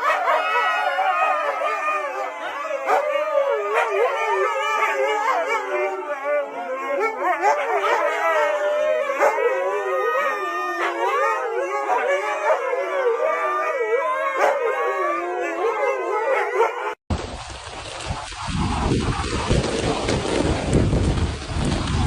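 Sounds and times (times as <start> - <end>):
dog howling: 0.0 - 17.0
steady rushing noise: 17.1 - 22.0.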